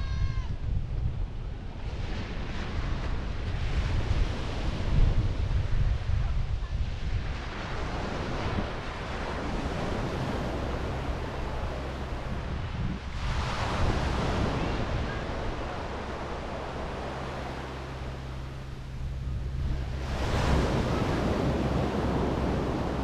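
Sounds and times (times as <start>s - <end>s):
wind rumble on microphone: 0.0s - 23.0s
sea waves breaking on beach: 1.8s - 23.0s.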